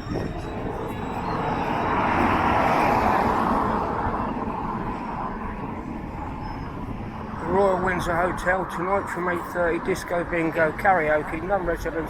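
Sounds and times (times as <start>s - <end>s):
vehicle passing close by: 0.1s - 8.8s.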